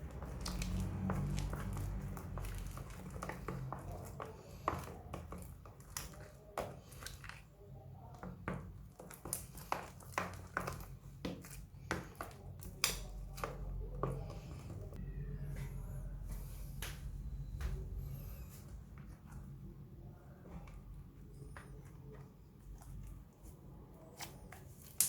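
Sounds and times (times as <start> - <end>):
low steady hum: 13.8 - 24.1.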